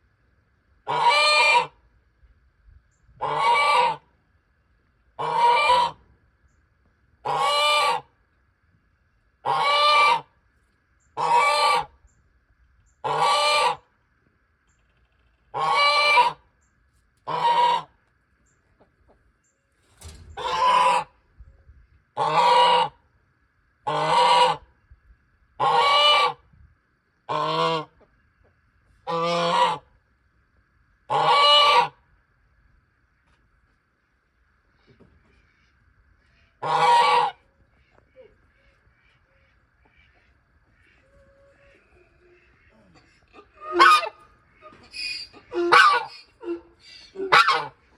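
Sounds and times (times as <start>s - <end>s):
goose honking: 0.9s - 1.8s, 3.2s - 4.1s, 5.2s - 6.0s, 7.2s - 8.1s, 9.4s - 10.3s, 11.2s - 12.0s, 13.0s - 13.9s, 15.5s - 16.4s, 17.2s - 18.0s, 20.4s - 21.2s, 22.2s - 23.0s, 23.8s - 24.7s, 25.6s - 26.4s, 27.3s - 28.0s, 29.0s - 29.9s, 31.1s - 32.0s, 36.4s - 47.9s.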